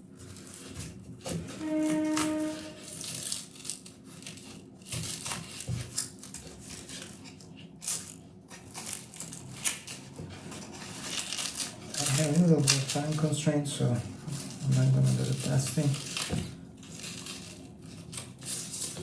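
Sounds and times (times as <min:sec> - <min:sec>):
short steady tone: 0:01.6 - 0:03.0
onion skin crackling and tearing: 0:01.7 - 0:13.3.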